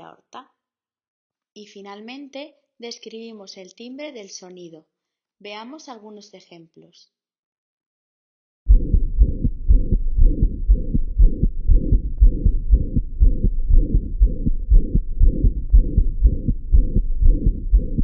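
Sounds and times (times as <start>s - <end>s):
heartbeat through stethoscope: 8.7s - 18.0s
high-pitched chirping heart murmur: 8.7s - 18.0s.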